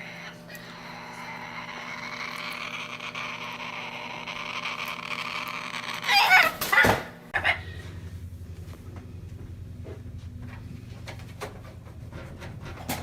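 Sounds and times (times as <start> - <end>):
parrot squawking: 0.0 - 7.8.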